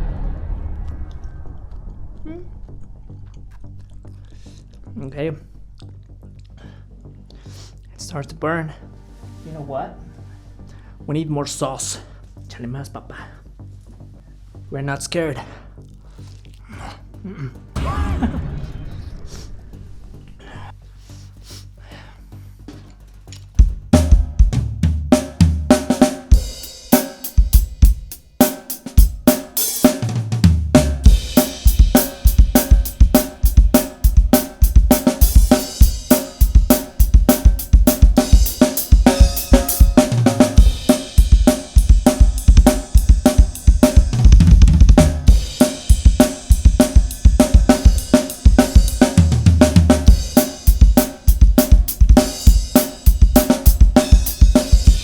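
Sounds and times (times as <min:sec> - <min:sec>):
backing track music: 0:22.6 - 0:55.0
drum kit groove: 0:22.6 - 0:55.0.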